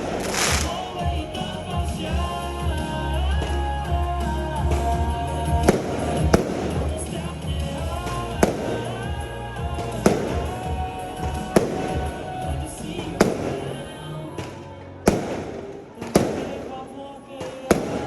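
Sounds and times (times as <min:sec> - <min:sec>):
fireworks bangs: 0:00.0 - 0:03.6, 0:04.6 - 0:18.0
music playing: 0:00.0 - 0:18.0.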